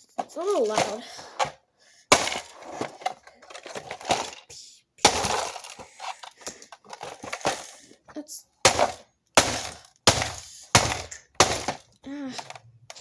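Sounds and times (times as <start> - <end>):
plastic cracking and clattering: 0.1 - 8.0, 8.6 - 13.0
hammer striking plastic: 0.8 - 2.6, 5.0 - 5.8, 8.6 - 11.9.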